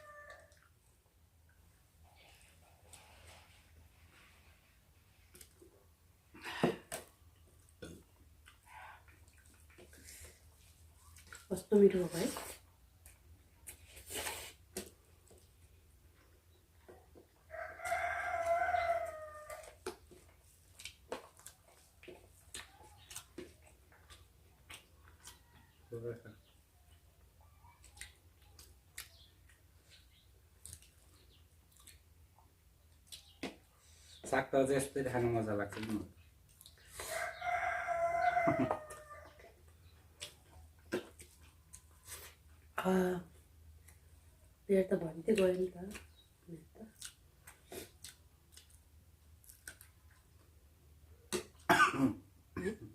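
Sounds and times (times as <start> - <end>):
rooster crowing: 17.5 - 19.8, 37.0 - 39.4.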